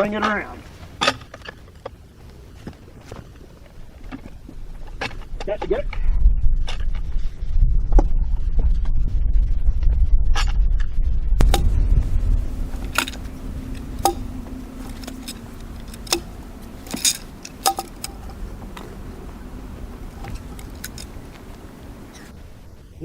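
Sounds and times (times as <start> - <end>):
low rumble: 3.8 - 23.0
metallic clinks and knocks: 12.6 - 19.0, 20.1 - 22.3.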